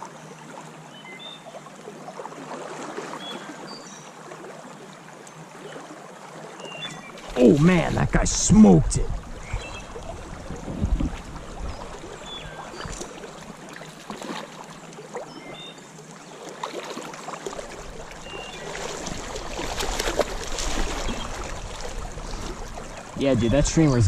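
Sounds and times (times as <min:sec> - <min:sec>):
creek water running: 0:00.0 - 0:24.0
fish splashing: 0:16.6 - 0:23.1.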